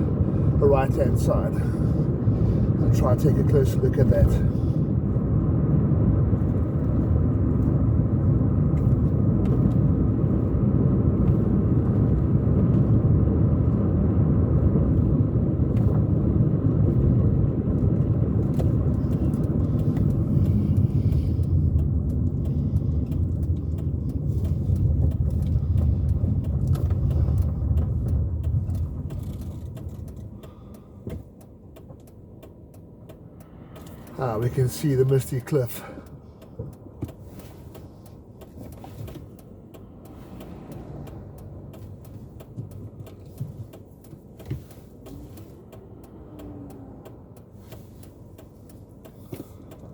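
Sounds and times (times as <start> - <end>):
car road and engine rumble: 0.0 - 49.9.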